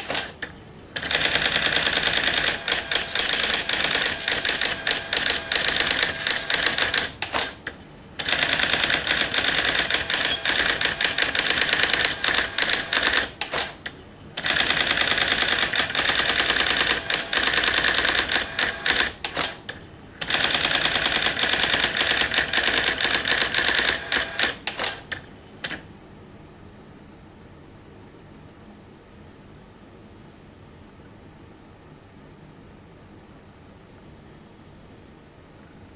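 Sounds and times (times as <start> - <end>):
electronic typewriter printing: 0.0 - 25.8.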